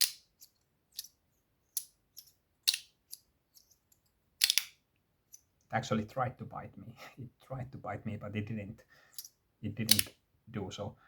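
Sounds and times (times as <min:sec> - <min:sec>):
metal fidget slider clicking: 0:04.4 - 0:04.7.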